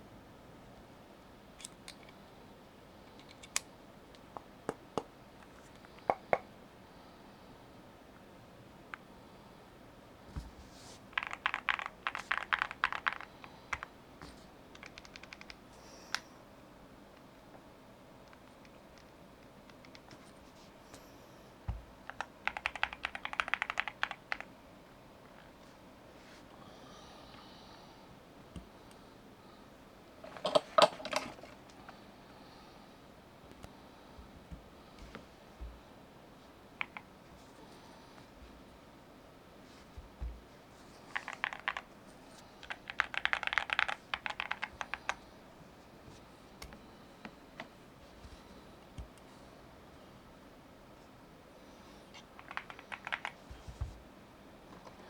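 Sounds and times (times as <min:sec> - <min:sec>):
mechanical keyboard keystrokes: 0:11.2 - 0:13.9, 0:14.7 - 0:15.6, 0:22.1 - 0:24.5, 0:41.2 - 0:41.8, 0:42.6 - 0:45.2, 0:52.4 - 0:53.4.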